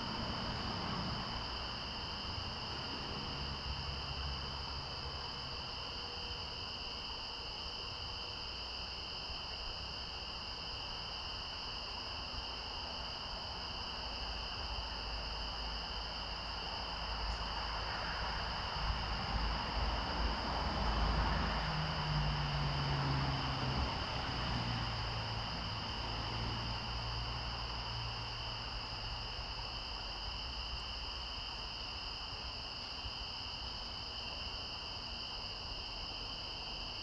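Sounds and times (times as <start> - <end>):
insects trilling: 0.0 - 37.0.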